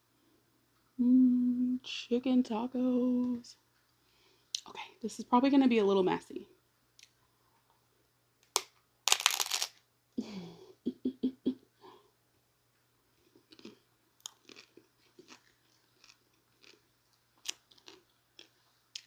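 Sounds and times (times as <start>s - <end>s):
chewing: 13.2s - 19.0s.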